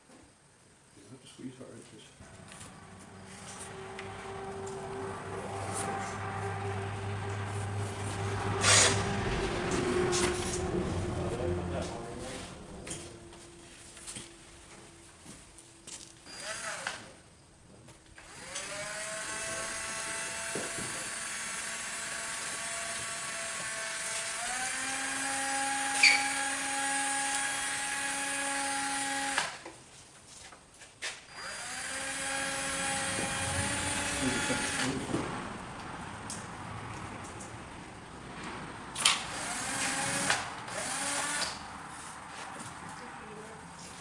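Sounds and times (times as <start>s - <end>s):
heat gun fan whining: 2.3s - 15.0s, 16.2s - 17.3s, 18.1s - 29.7s, 31.3s - 35.3s, 39.0s - 41.7s.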